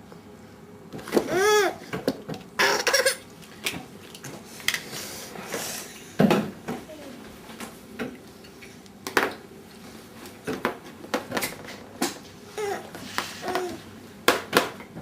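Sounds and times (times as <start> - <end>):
toddler babbling: 1.3 - 1.8, 12.5 - 13.8.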